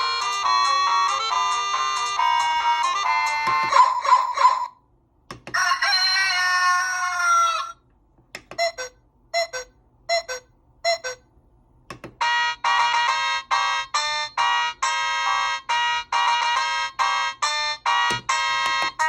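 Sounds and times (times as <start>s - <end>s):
rooster clucks: 5.5s - 7.8s
rooster crowing from speaker: 5.5s - 7.8s.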